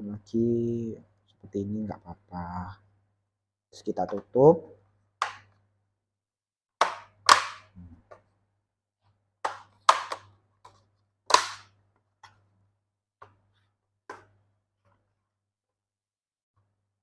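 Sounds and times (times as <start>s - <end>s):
plastic clips snapping: 11.3s - 11.7s.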